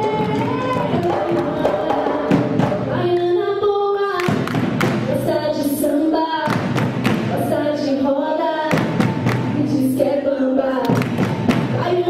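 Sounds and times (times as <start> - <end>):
hand percussion rhythm: 0.0 - 3.6, 4.2 - 5.4, 6.4 - 7.7, 8.6 - 12.0.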